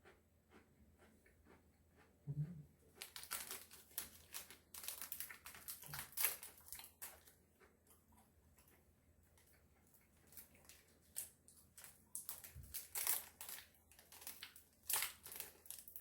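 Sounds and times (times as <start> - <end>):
plastic wrapper crinkling: 3.0 - 7.3, 10.2 - 16.0.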